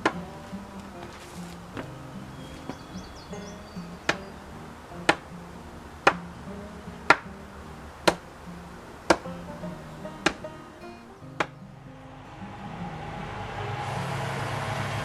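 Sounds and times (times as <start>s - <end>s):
background music: 0.0s - 15.0s.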